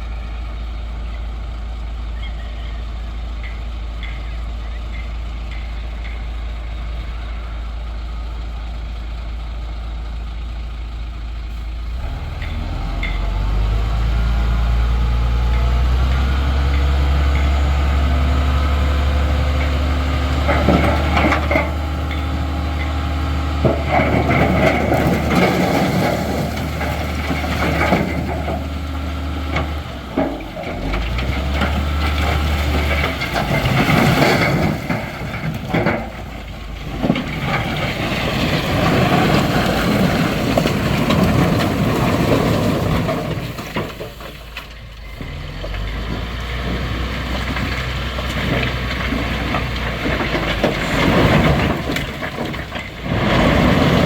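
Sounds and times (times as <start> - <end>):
diesel engine running and revving: 0.0 - 54.0
clattering and scraping: 19.6 - 44.9, 45.6 - 54.0.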